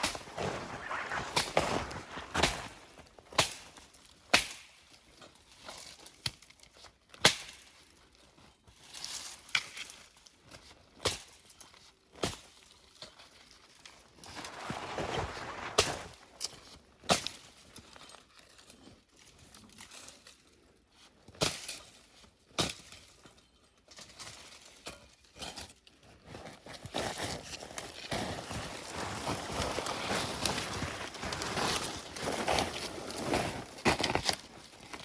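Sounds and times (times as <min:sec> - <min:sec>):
brush and twigs rustling: 0:00.0 - 0:04.7, 0:12.6 - 0:20.5, 0:27.2 - 0:35.0.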